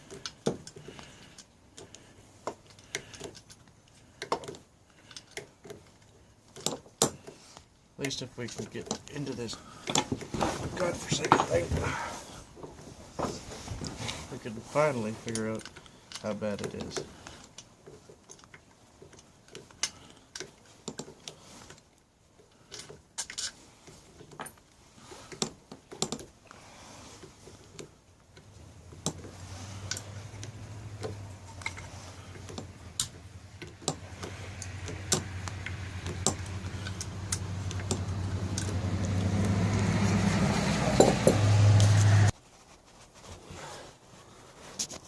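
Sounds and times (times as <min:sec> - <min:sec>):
low motor hum: 0:34.0 - 0:42.3.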